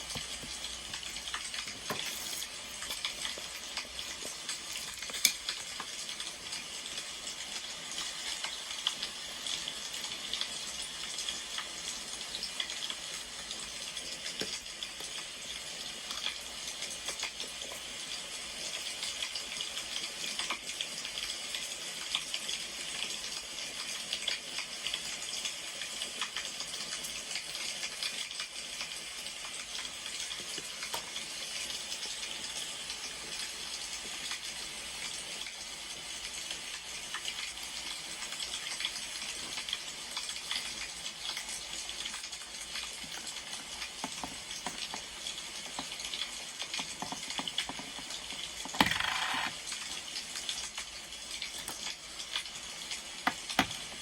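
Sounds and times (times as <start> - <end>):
wood fire crackling: 0.0 - 9.1.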